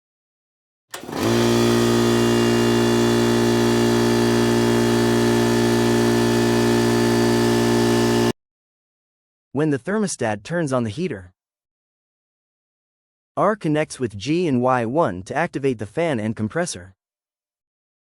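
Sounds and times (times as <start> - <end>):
compressor hum: 1.0 - 8.3.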